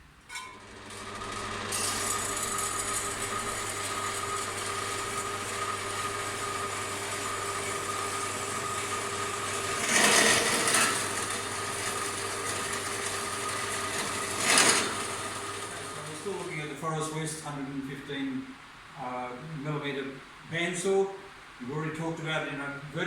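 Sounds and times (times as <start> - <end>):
bandsaw whining: 0.3 - 16.6.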